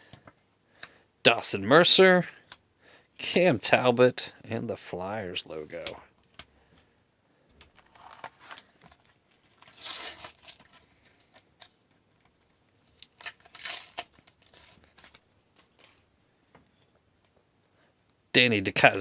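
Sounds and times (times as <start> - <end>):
stickers crinkling and clicking: 7.6 - 16.0
wrappers tearing: 7.8 - 11.8, 12.8 - 16.0.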